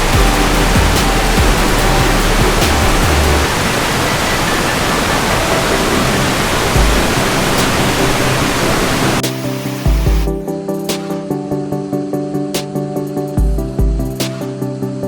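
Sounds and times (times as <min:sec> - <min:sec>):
waterfall roaring: 0:00.0 - 0:09.2
faint music: 0:00.0 - 0:15.0.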